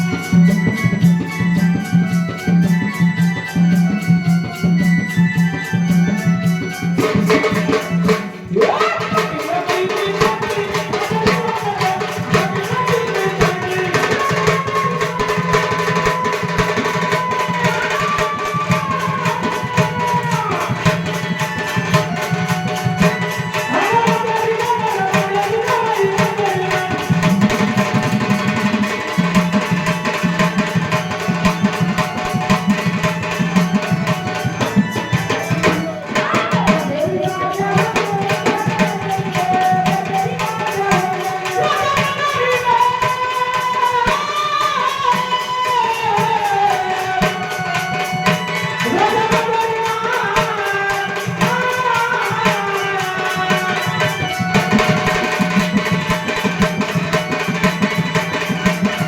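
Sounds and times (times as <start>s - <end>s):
tabla playing a steady rhythm: 0.0s - 59.0s.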